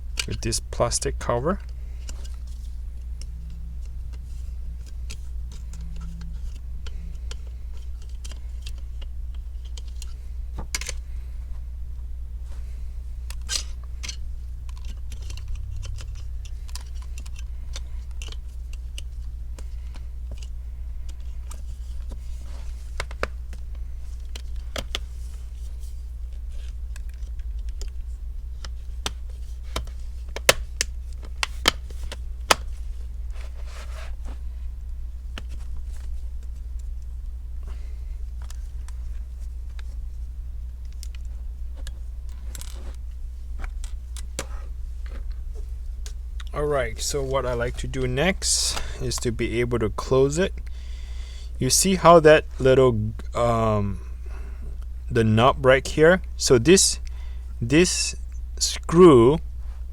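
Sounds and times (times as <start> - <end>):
low hum: 0.0 - 59.9
plastic laptop casing clicks: 28.6 - 32.7
sharp plastic snaps: 28.6 - 32.7.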